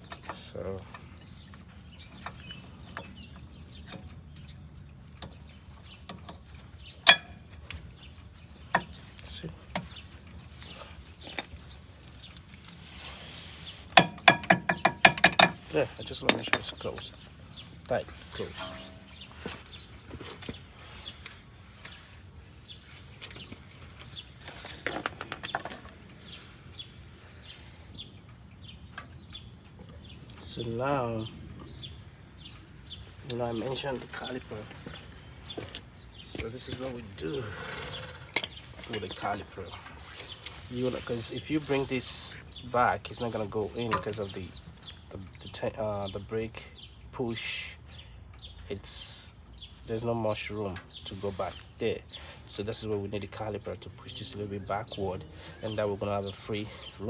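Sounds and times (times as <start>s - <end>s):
bird chirping: 0.0s - 57.0s
metallic clinks of brake parts: 18.4s - 19.3s
low steady hum: 18.4s - 19.5s.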